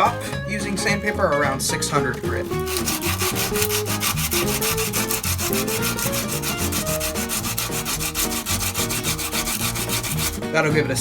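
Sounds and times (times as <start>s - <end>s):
sandpaper rubbing steel blade: 2.4s - 10.5s.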